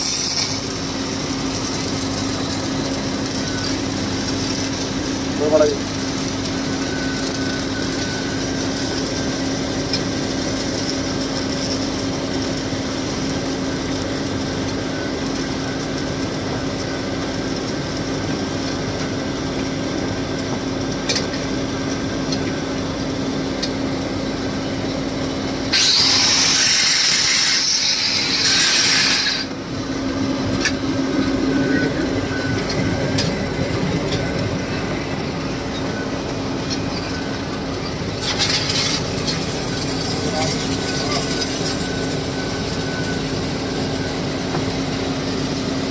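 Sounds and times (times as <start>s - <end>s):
welding arc crackle: 0.0s - 45.9s
welding machines humming: 0.0s - 45.9s
loud high hiss: 25.7s - 29.5s.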